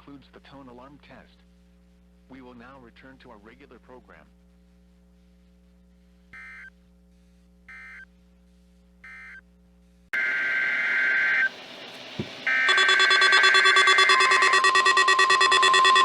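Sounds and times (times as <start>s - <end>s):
radio static: 12.4s - 16.0s
multi-tone alert signal: 12.5s - 16.0s
two-tone digital data bursts: 12.5s - 16.0s.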